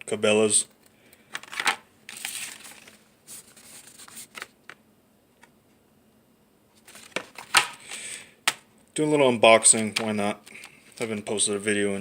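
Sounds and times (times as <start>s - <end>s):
knife packaging crinkling: 1.4s - 4.5s, 6.8s - 8.0s.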